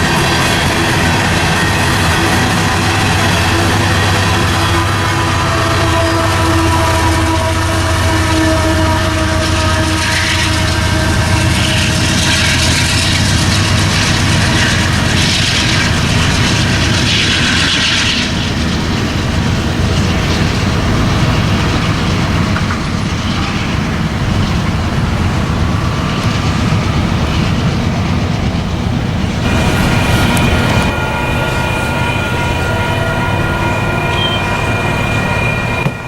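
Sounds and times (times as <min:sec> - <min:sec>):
train wheels rumbling on rail: 0:00.0 - 0:36.0
bright rushing noise: 0:29.3 - 0:36.0.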